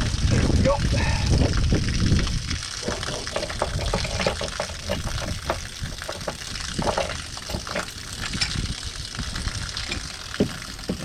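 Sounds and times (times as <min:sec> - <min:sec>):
water draining and splashing: 0:00.0 - 0:11.0
small clicks and knocks: 0:02.9 - 0:08.6.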